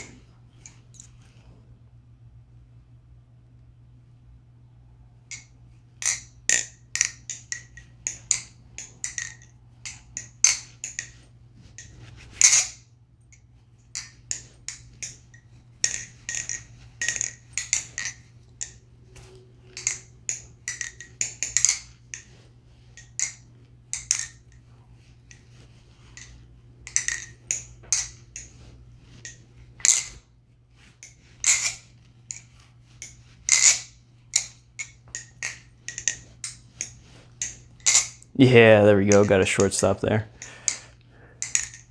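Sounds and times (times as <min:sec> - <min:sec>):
butterfly knife clacking: 0:06.0 - 0:11.1, 0:19.8 - 0:22.2, 0:40.4 - 0:41.9.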